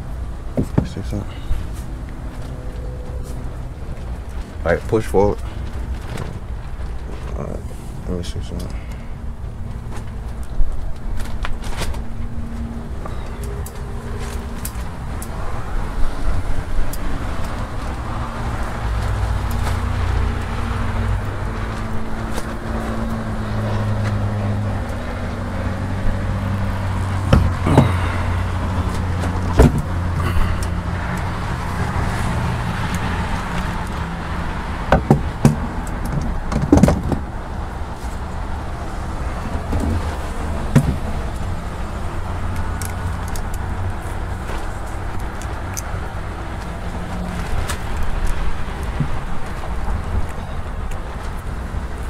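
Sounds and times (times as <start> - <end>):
sharp knocks and clicks: 34.9 - 37.3.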